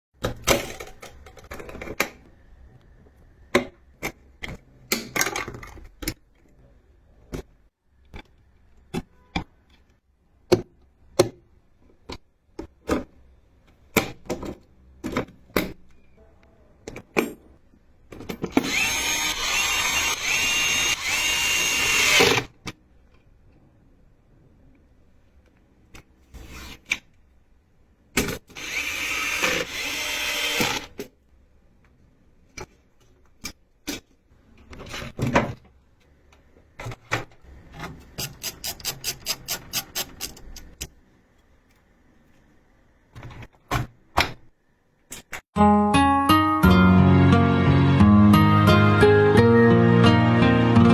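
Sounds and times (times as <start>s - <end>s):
small power tool running: 18.6s - 22.5s, 28.6s - 30.9s.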